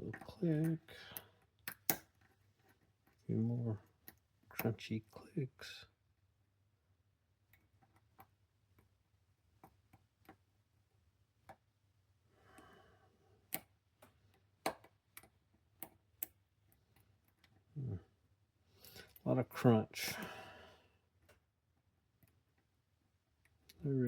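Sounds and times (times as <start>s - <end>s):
lock pick clicking in padlock: 1.6s - 2.1s.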